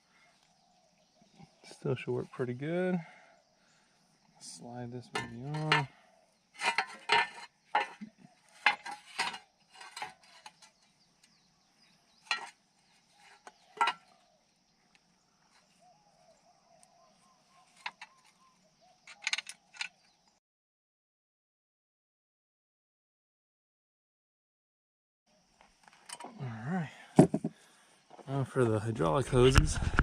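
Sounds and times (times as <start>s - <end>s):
steel parts clanking together: 5.1s - 5.9s, 6.6s - 8.0s, 8.6s - 10.8s, 12.2s - 12.5s, 13.8s - 14.1s, 19.1s - 20.0s.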